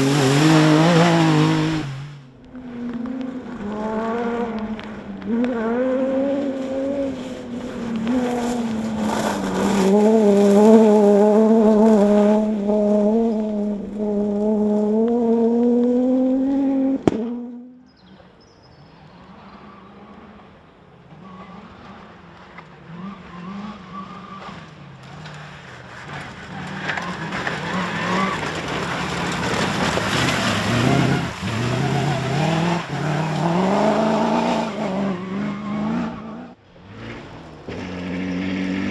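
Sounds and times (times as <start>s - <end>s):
tyres on gravel: 0.0s - 15.0s, 21.0s - 36.0s
car engine revving: 0.0s - 18.0s, 18.9s - 38.9s
rally car engine high note: 0.0s - 18.0s.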